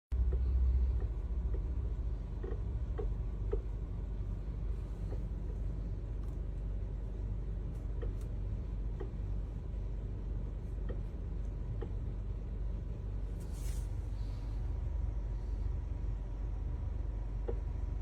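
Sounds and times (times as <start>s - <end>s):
car engine rumbling: 0.1s - 18.0s.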